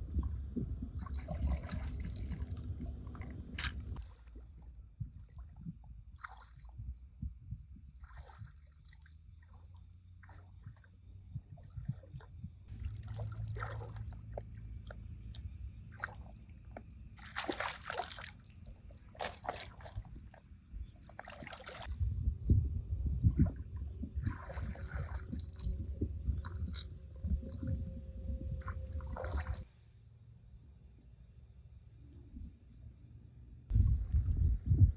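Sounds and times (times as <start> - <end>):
shallow water splashing: 0.2 - 6.8, 8.0 - 22.1, 23.2 - 27.9, 28.6 - 29.7.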